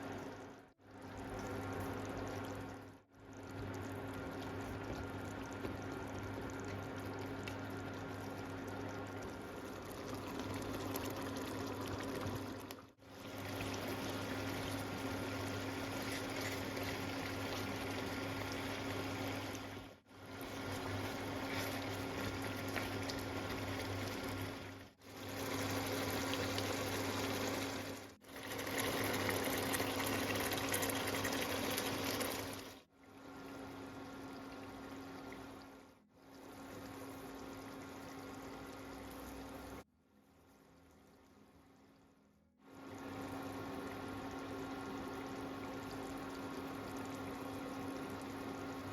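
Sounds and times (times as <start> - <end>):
meat sizzling and bubbling in oil: 0.0 - 41.7, 42.6 - 48.9.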